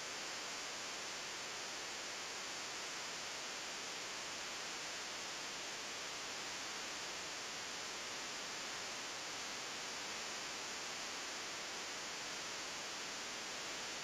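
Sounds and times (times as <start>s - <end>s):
recording noise hiss: 0.0s - 14.0s.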